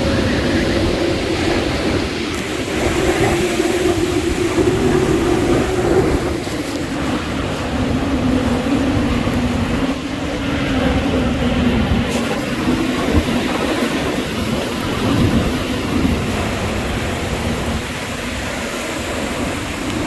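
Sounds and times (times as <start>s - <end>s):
hurricane winds howling: 0.0s - 20.0s
wind gusts buffeting microphone: 0.0s - 20.0s.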